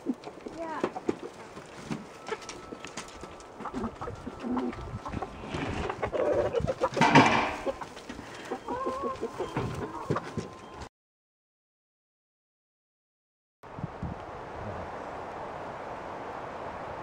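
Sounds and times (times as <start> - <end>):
chickens clucking: 0.0 - 10.9.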